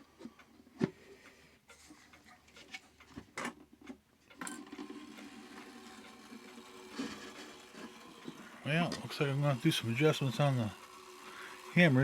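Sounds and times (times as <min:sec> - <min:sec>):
clock running: 0:04.3 - 0:12.0.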